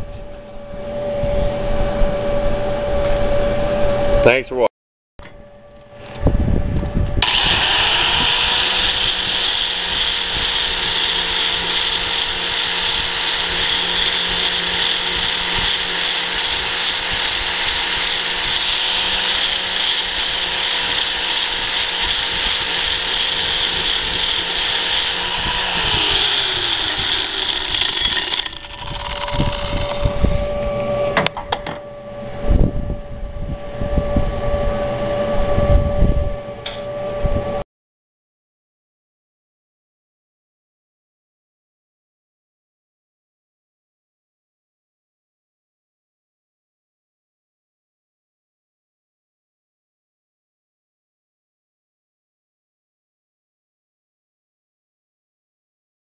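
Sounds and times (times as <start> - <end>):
angle grinder sanding metal: 7.2 - 30.2
grinder winding down: 7.2 - 31.3.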